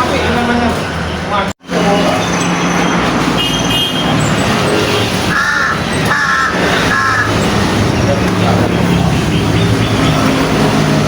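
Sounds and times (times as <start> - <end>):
crow cawing: 5.3 - 7.4.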